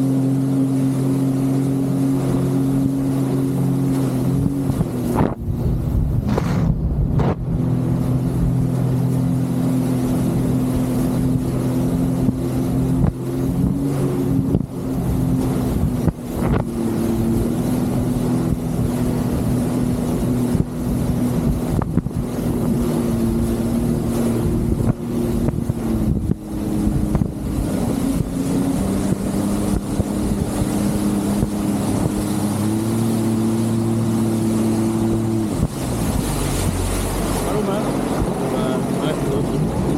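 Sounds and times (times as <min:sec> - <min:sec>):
jet ski engine running: 0:00.0 - 0:39.9
wind on microphone: 0:01.7 - 0:39.9.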